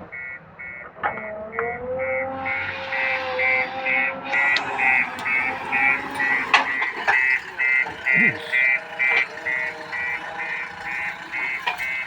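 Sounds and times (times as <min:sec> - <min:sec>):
reversing alarm beeping: 0:00.1 - 0:12.0
engine running: 0:04.3 - 0:12.0.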